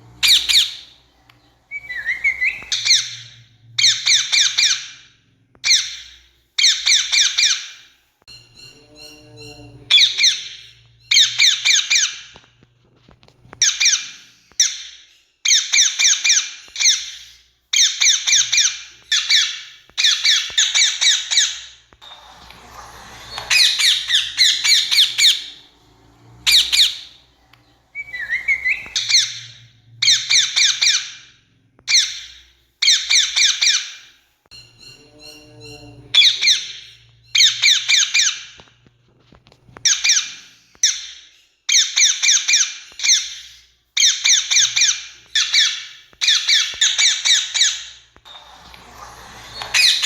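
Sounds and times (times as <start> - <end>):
parakeet squawking: 0.2 - 1.1, 1.7 - 7.8, 8.5 - 12.3, 17.8 - 25.8, 26.4 - 27.3, 27.9 - 31.3, 31.9 - 34.1, 34.7 - 38.6, 39.8 - 50.0.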